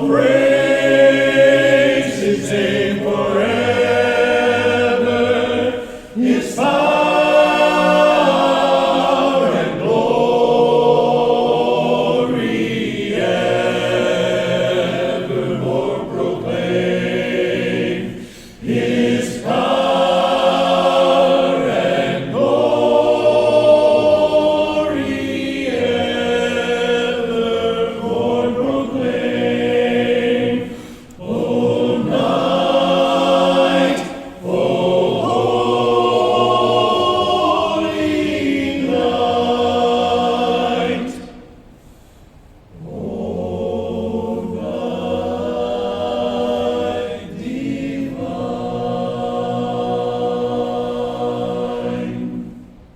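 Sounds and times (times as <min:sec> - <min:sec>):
men singing in close harmony: 0:00.0 - 0:41.5.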